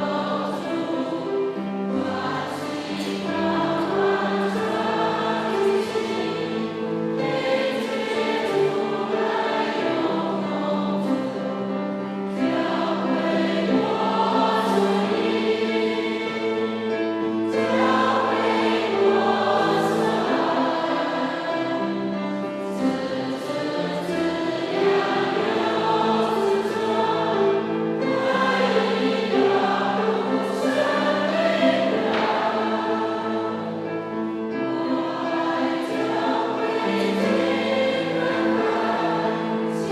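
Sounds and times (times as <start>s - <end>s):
choir singing a hymn: 0.0s - 39.9s.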